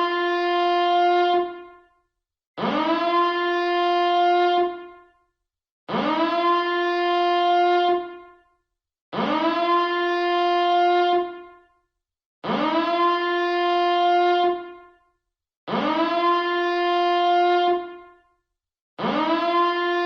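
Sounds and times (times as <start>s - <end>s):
alarm siren blasts: 2.6s - 5.2s, 5.9s - 8.4s, 9.1s - 11.7s, 12.4s - 15.0s, 15.7s - 18.3s, 19.0s - 20.0s.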